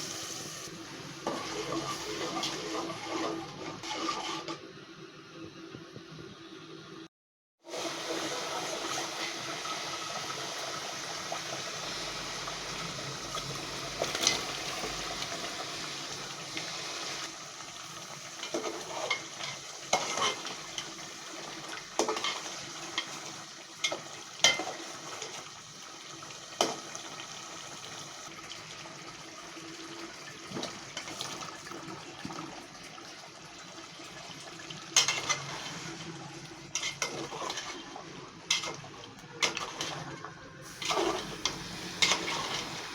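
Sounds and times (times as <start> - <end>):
chicken sizzling in a pan: 0.0 - 4.5, 7.6 - 42.9
utensil scraping a pan: 1.2 - 4.6, 18.4 - 20.9, 36.7 - 37.9, 40.7 - 42.9.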